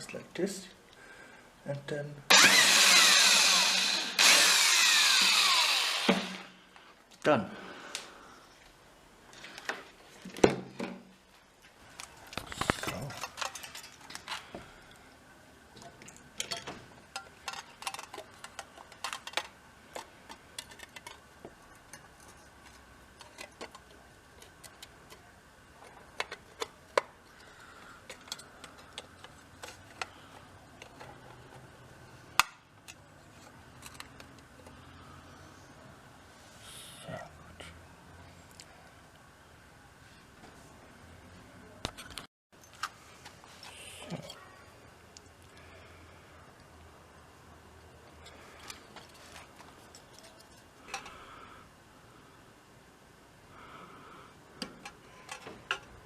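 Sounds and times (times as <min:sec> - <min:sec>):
metal parts and tools clinking: 0:12.4 - 0:14.4.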